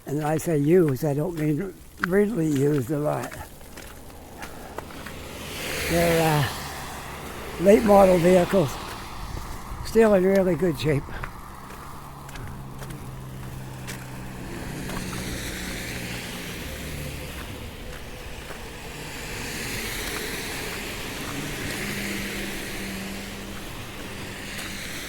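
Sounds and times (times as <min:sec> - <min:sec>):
low engine hum: 0:00.0 - 0:25.0
tyre hiss of passing cars: 0:00.0 - 0:25.0.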